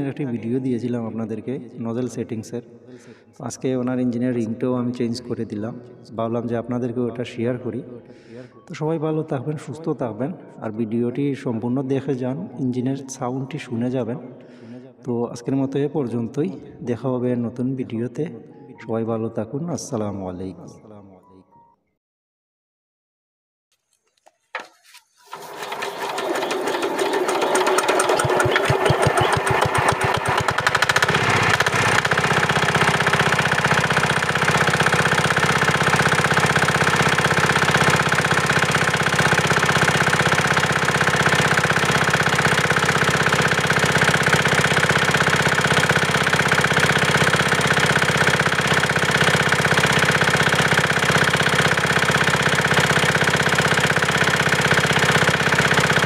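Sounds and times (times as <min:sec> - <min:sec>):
diesel engine starting up: 0:25.2 - 0:56.0.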